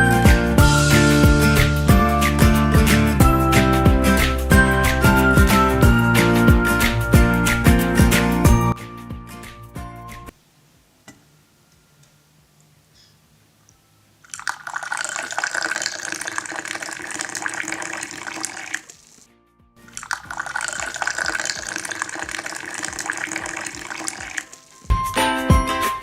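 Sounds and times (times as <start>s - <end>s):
liquid pouring: 14.2s - 24.9s.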